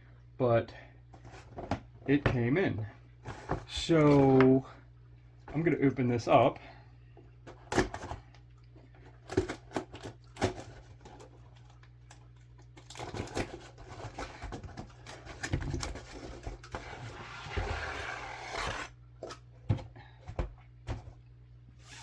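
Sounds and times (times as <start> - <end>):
packaging scraping and rustling: 12.8 - 19.4.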